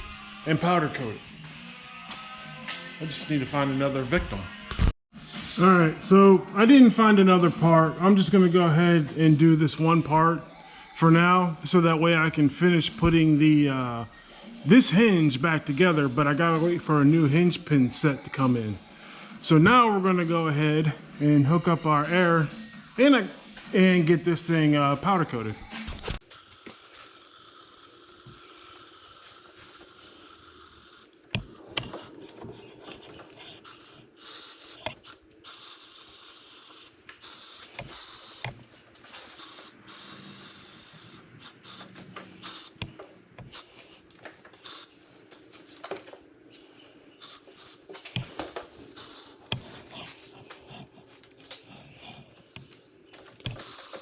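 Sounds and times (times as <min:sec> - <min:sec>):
air line hiss: 0:26.3 - 0:44.0, 0:44.6 - 0:45.0, 0:47.2 - 0:49.9, 0:53.4 - 0:54.0.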